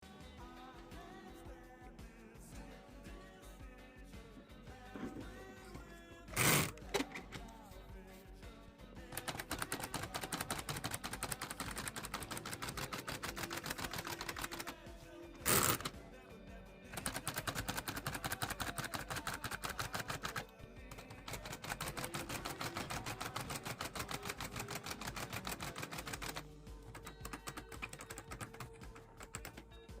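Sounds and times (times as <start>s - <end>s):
background music: 0.0s - 30.0s
typewriter keys clacking: 6.4s - 7.5s, 9.1s - 14.8s, 15.4s - 16.0s, 17.0s - 29.7s.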